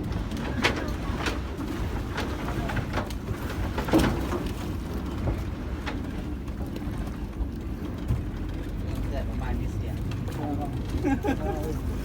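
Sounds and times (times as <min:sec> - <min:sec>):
boat engine droning: 0:07.0 - 0:12.0.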